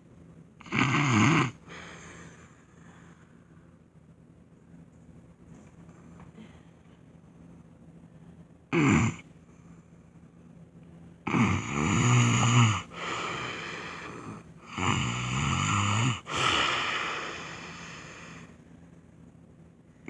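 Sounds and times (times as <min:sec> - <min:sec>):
man snoring loudly: 0:00.6 - 0:01.6, 0:08.7 - 0:09.2, 0:11.3 - 0:18.0.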